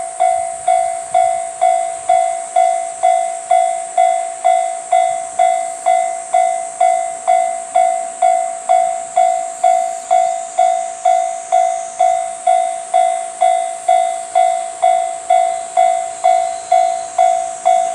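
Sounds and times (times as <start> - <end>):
level crossing warning bell: 0.0 - 17.9
steady high hiss: 0.0 - 17.9.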